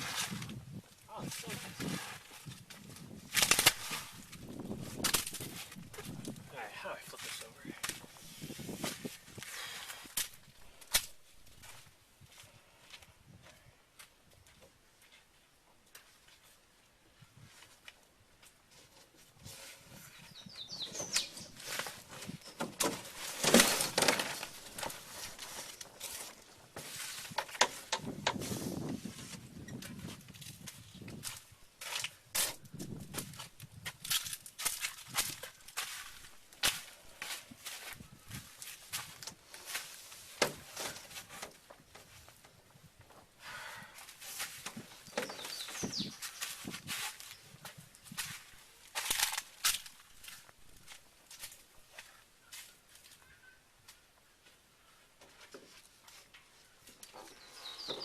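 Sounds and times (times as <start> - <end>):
footsteps: 20.9 - 41.4.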